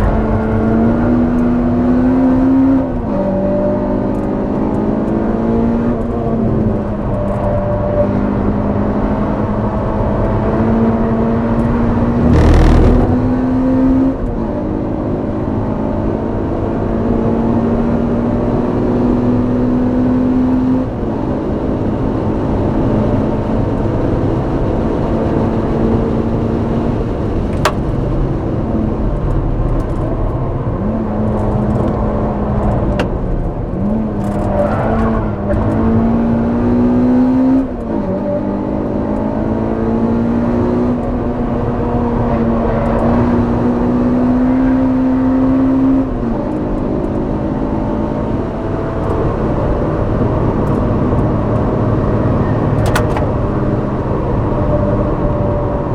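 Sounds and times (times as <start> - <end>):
car engine revving: 0.0 - 6.5, 8.0 - 15.0.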